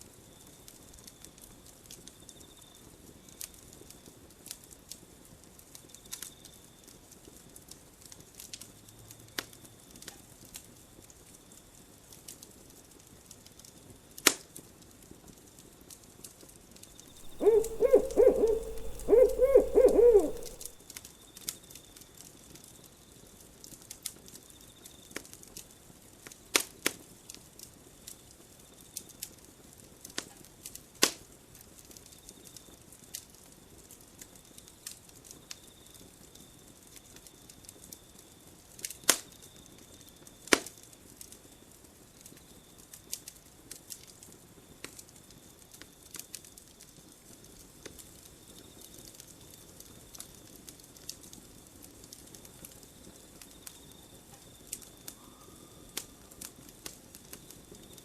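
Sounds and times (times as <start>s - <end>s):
owl hooting: 17.2s - 20.7s.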